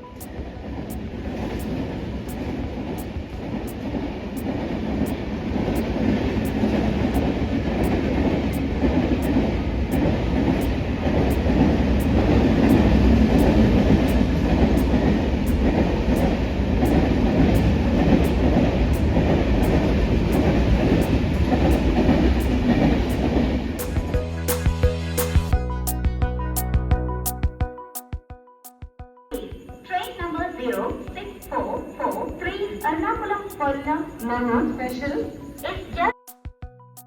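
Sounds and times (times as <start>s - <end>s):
train wheels rumbling: 0.0s - 24.7s.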